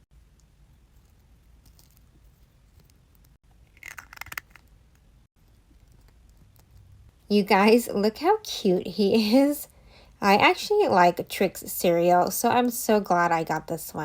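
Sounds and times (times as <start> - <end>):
plastic toy parts clicking: 3.7 - 4.6.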